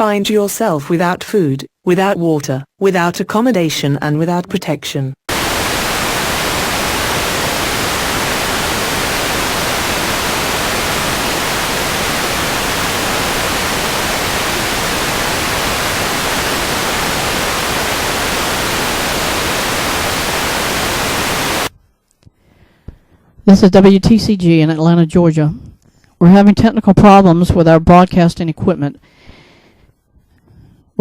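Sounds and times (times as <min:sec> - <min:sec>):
loud static hiss: 0:05.3 - 0:21.7.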